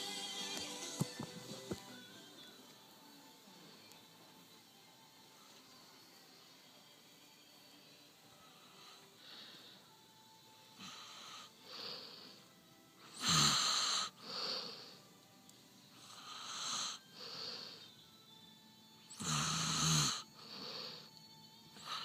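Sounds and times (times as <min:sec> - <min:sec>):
soft breaths: 0:03.0 - 0:18.2, 0:20.0 - 0:22.0
man snoring loudly: 0:10.8 - 0:12.4, 0:13.0 - 0:15.0, 0:16.0 - 0:17.8, 0:19.1 - 0:21.1, 0:21.8 - 0:22.0.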